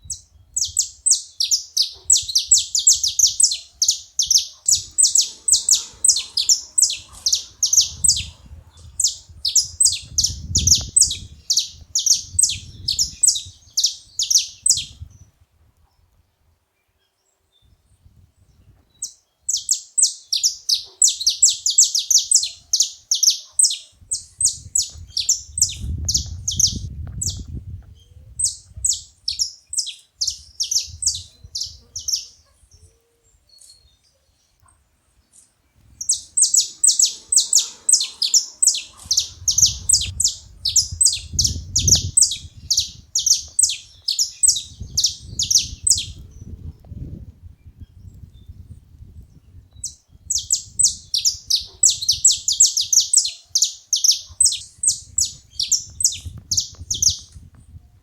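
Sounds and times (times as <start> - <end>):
finch chirping: 0.1 - 15.0, 19.0 - 27.4, 28.4 - 32.5, 36.0 - 46.6, 49.8 - 57.4.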